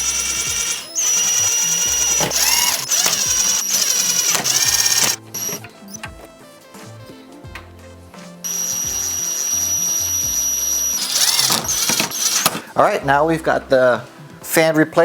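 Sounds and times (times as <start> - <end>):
electric screwdriver motor whine: 0.0 - 5.7, 8.5 - 12.6.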